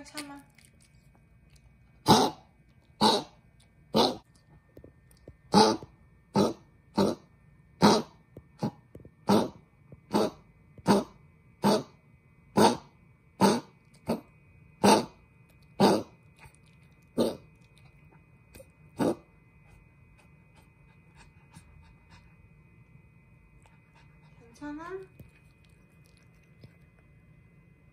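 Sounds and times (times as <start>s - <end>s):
dog coughing: 2.0s - 3.4s, 5.5s - 5.8s, 7.8s - 11.9s, 12.6s - 14.2s, 14.8s - 15.1s, 15.8s - 16.1s.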